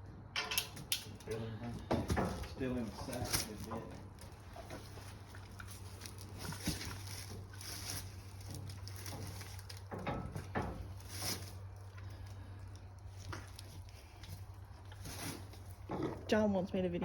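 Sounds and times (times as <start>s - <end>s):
steady low hum: 0.0s - 17.0s
rustling handling noise: 0.6s - 16.3s.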